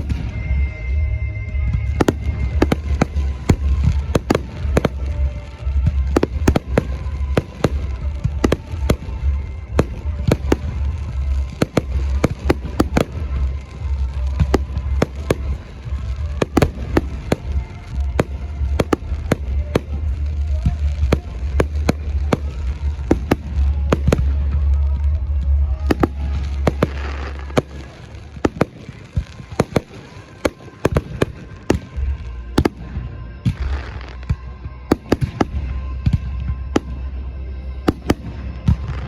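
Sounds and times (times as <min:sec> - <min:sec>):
low rumble: 0:00.0 - 0:28.5
fireworks bursting with sharp bangs: 0:00.0 - 0:39.0
music playing: 0:00.0 - 0:39.0.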